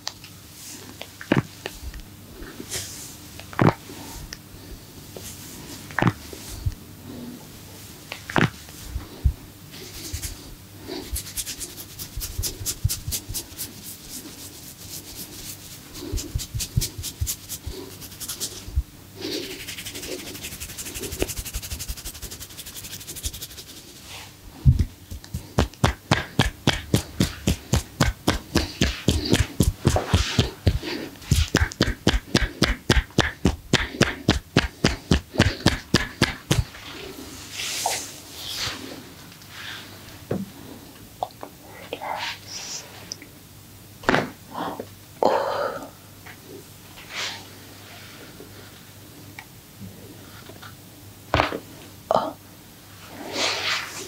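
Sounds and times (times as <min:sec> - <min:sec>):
hands slapping and tapping on body: 0:24.8 - 0:36.8.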